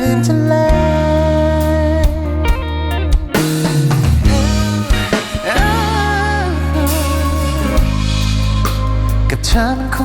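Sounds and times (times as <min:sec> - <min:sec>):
pop-rock band playing: 0:00.0 - 0:10.0
person singing: 0:04.2 - 0:10.0.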